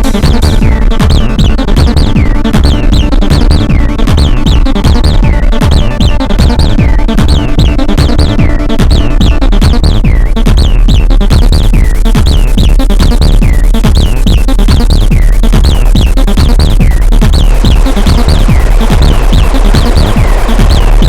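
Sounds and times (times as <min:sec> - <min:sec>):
acid bassline: 0:00.0 - 0:21.0
electronic drum beat: 0:00.0 - 0:21.0
high synth blips falling in pitch: 0:00.2 - 0:10.3, 0:16.4 - 0:21.0.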